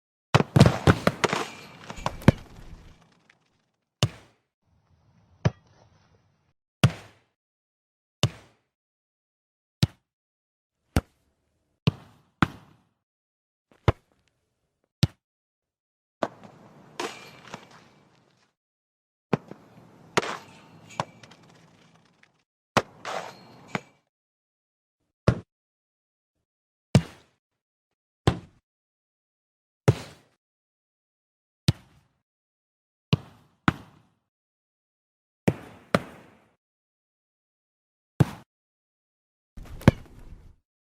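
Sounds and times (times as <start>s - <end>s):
ball being kicked: 39.6s - 40.4s.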